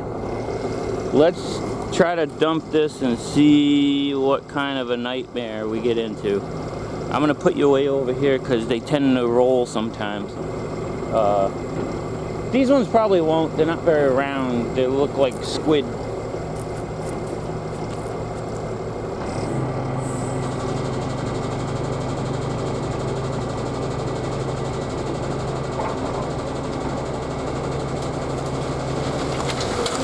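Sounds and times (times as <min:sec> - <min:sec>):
diesel truck engine running: 0:00.0 - 0:30.0.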